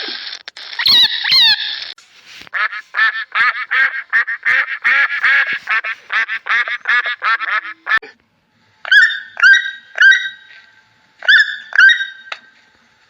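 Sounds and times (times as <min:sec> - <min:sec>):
bird calling: 0:08.8 - 0:12.5
short harsh bird calls: 0:08.8 - 0:12.5.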